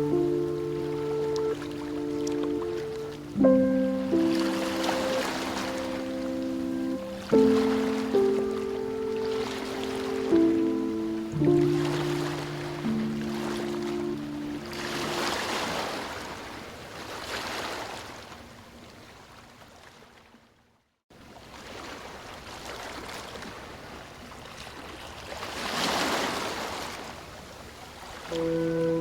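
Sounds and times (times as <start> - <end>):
ocean waves washing onto beach: 0.0 - 18.4.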